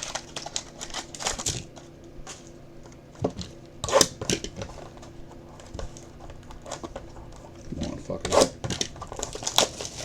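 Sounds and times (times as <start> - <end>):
cardboard and wrapper rustling: 9.0 - 10.0.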